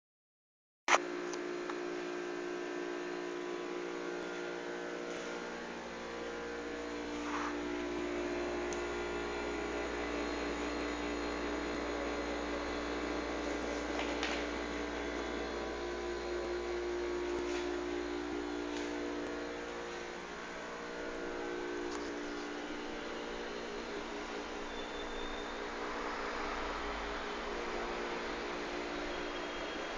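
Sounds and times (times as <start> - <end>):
refrigerator humming: 1.1 - 29.9.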